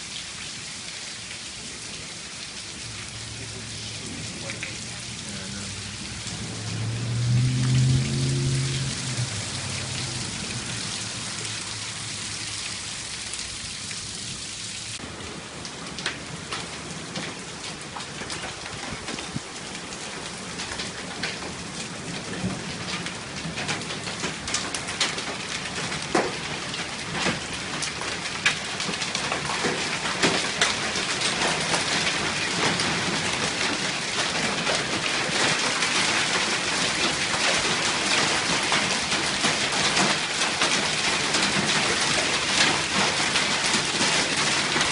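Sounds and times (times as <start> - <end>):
rain hissing: 0.0 - 44.9
hailstones striking: 20.5 - 44.9.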